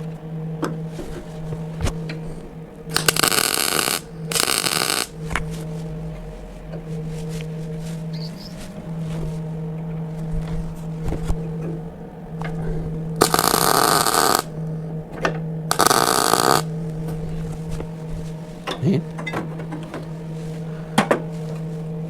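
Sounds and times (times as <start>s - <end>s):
welder crackling hiss: 2.9s - 5.9s, 13.2s - 14.6s, 15.7s - 16.7s.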